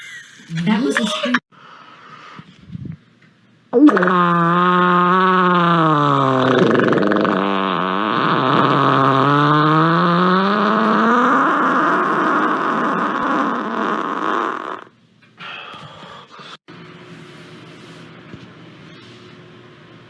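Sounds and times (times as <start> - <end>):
long fart: 3.8 - 14.9.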